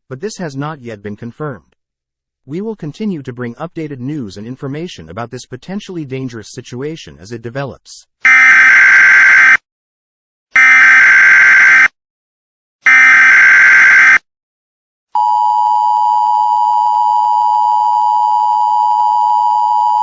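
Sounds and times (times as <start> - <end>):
digital data screech: 8.3 - 9.6, 10.6 - 11.9, 12.9 - 14.2.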